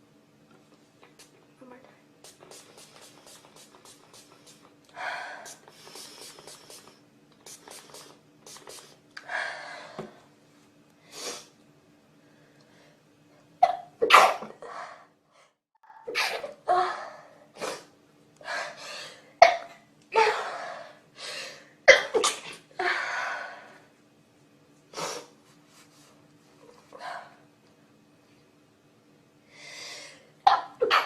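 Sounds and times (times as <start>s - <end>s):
faint steady hum: 0.0s - 31.0s
breathy sneeze-like bursts: 14.0s - 14.5s.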